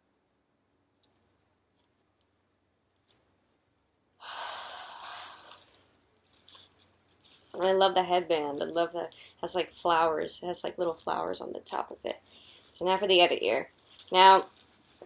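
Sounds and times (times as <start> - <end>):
woman sighing: 4.2 - 5.6.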